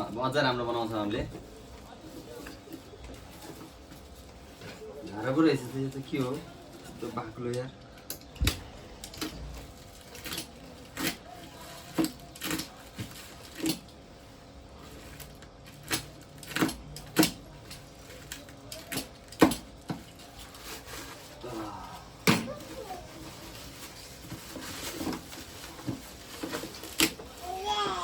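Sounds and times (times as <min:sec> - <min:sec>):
packaging rustling: 0:09.1 - 0:28.0.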